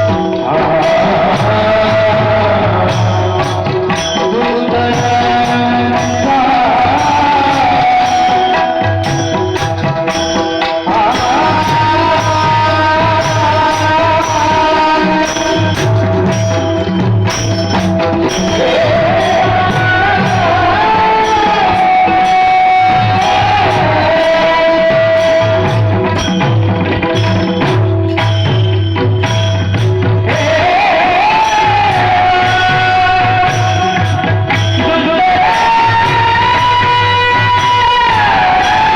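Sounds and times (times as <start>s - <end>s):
small hand cymbals: 0.0s - 38.9s.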